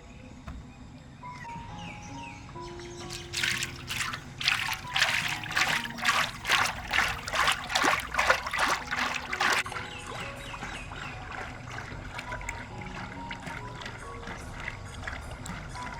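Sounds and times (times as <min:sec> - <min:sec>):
water splashing in a basin: 0:03.1 - 0:15.9.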